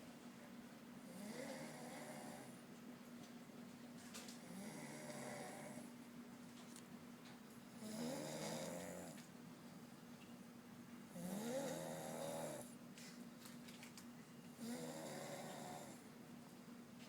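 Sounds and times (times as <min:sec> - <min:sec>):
person snoring deeply: 0:04.5 - 0:05.9, 0:07.8 - 0:09.2, 0:11.2 - 0:12.7, 0:14.6 - 0:16.0.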